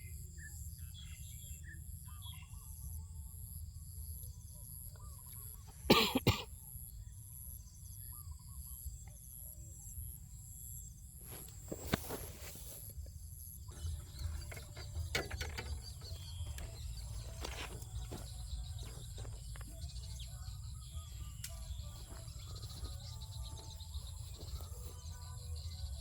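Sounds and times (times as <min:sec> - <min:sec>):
insect trilling and chirping: 0:12.8 - 0:26.0
bird calls: 0:13.4 - 0:26.0.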